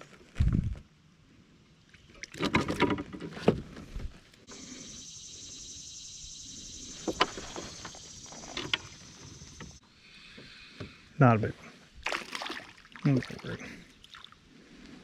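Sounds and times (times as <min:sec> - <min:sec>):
knocking and splashing: 0:12.0 - 0:13.5.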